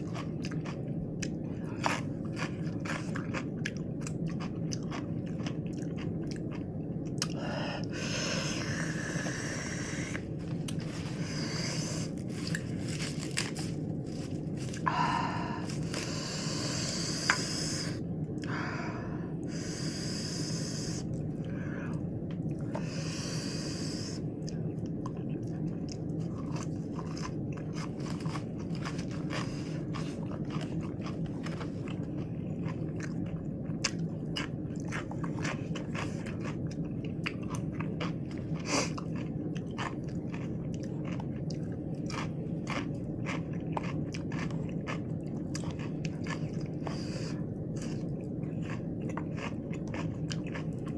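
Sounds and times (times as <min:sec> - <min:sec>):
crunchy chewing: 0:00.0 - 0:18.6, 0:19.5 - 0:50.9
low hum: 0:00.0 - 0:50.9.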